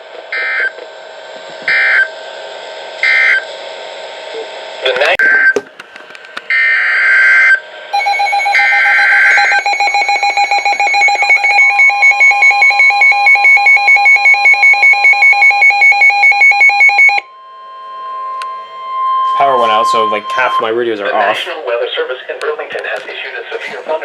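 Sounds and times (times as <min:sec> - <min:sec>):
steady warning tone: 0:00.3 - 0:00.8, 0:01.7 - 0:02.3, 0:06.5 - 0:24.0
electronic alarm beeping rapidly: 0:06.5 - 0:21.4
buzzy data screeches: 0:06.9 - 0:22.3.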